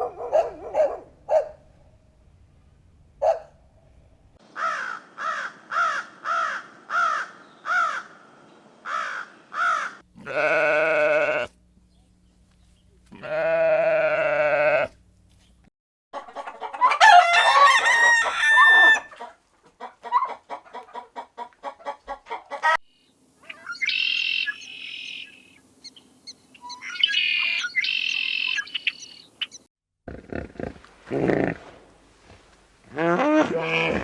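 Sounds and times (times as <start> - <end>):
hens clucking: 16.2 - 22.8
high pitched chicken calls: 16.7 - 19.2, 22.5 - 29.6
rooster crowing: 16.8 - 19.2.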